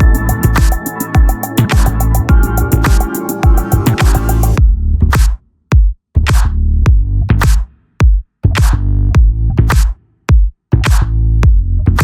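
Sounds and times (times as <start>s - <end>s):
hi-hat ticks: 0.0s - 4.6s
electronic music: 0.0s - 5.4s
deep kick drums: 0.0s - 12.0s.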